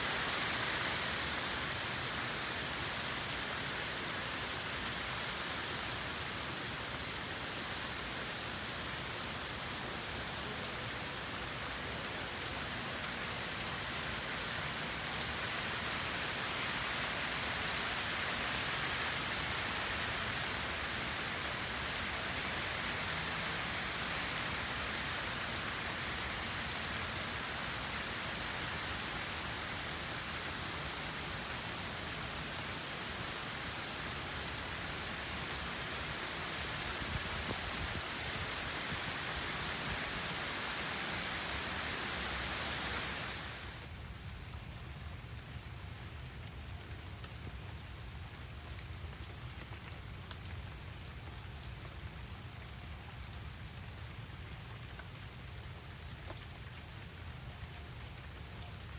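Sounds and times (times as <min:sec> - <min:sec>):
rain pattering on a surface: 0:00.0 - 0:58.9
faint raindrop ticks: 0:26.2 - 0:27.4, 0:44.4 - 0:58.9.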